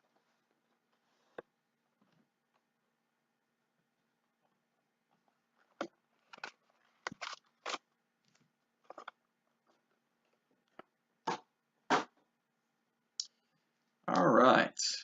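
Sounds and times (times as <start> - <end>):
wrapper and cardboard crinkling: 6.2 - 9.1.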